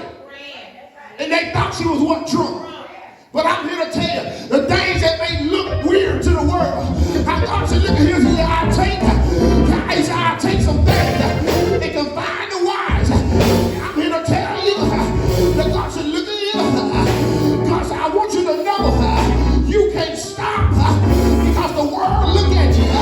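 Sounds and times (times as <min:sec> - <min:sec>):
voices singing: 0:04.7 - 0:23.0
held bass notes: 0:05.2 - 0:12.1, 0:12.9 - 0:20.0, 0:20.6 - 0:23.0
percussion: 0:12.9 - 0:14.1, 0:16.9 - 0:18.0.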